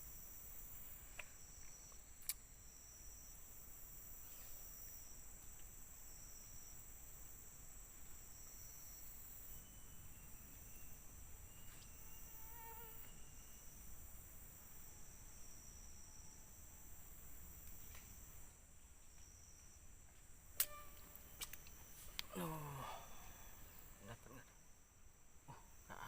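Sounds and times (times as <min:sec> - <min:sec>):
insects high continuous drone: 0:00.0 - 0:26.0
lower insect shrill: 0:09.5 - 0:13.9, 0:20.6 - 0:24.1.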